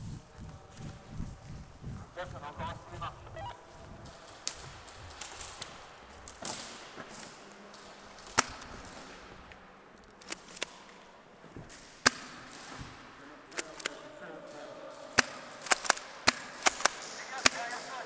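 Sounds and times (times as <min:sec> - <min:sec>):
airsoft gun shots: 0:15.1 - 0:18.0.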